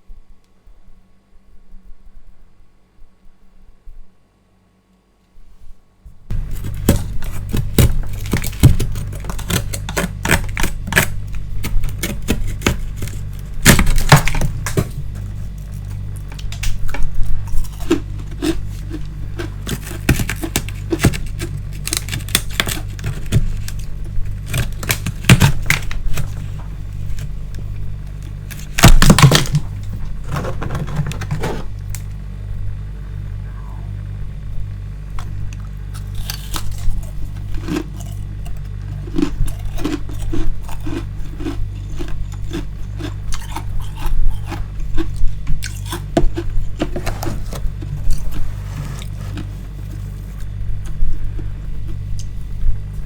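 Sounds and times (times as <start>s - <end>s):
steady low hum: 0.0s - 53.0s
ice being scraped and chipped: 6.3s - 15.8s, 17.5s - 27.4s.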